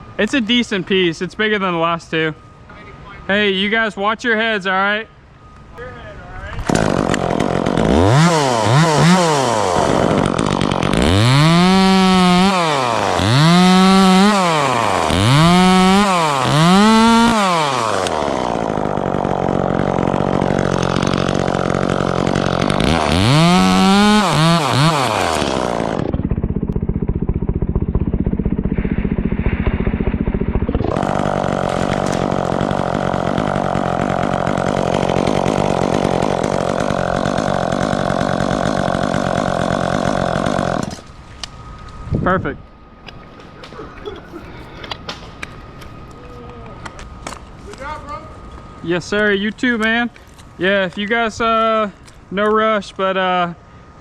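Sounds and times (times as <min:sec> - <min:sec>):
chainsaw revving and idling: 0:06.6 - 0:41.1.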